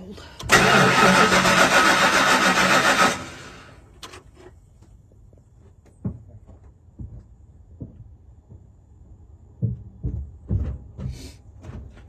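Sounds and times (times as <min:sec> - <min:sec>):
starter cranking engine: 0:00.4 - 0:03.7.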